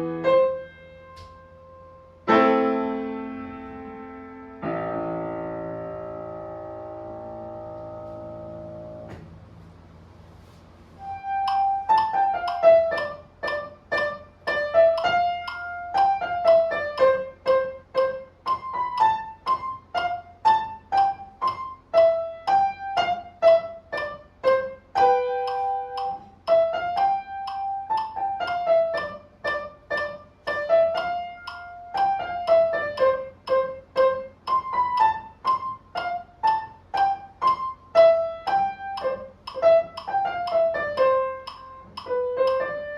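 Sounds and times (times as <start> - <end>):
piano melody: 0.0 - 9.8, 10.9 - 42.9.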